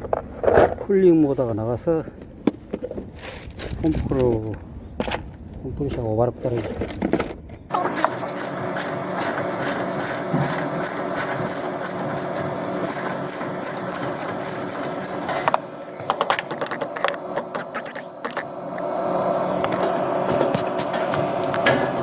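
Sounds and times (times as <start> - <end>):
machinery whirring: 7.7 - 22.0.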